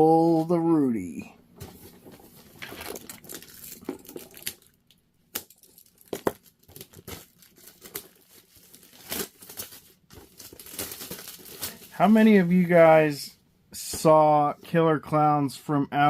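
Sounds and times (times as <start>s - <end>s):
packaging torn and crinkled: 2.6s - 12.0s.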